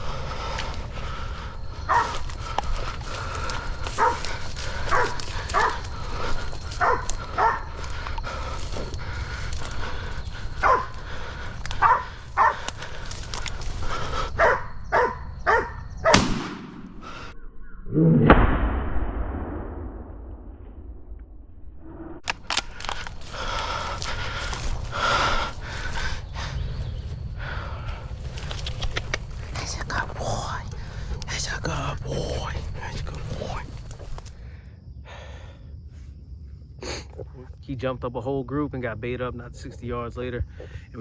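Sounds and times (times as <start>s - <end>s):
dogs barking: 1.8s - 16.2s
sharp crack: 16.1s - 17.4s, 18.1s - 21.5s.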